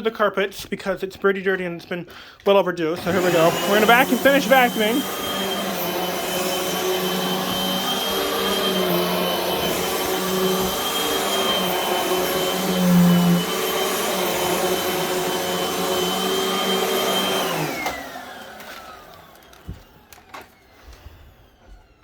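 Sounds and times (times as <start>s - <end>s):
vacuum cleaner running: 3.0s - 22.0s.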